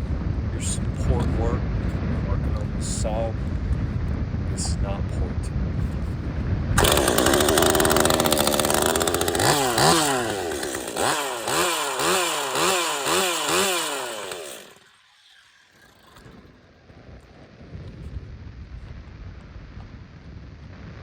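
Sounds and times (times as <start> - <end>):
chainsaw revving: 6.8 - 16.7.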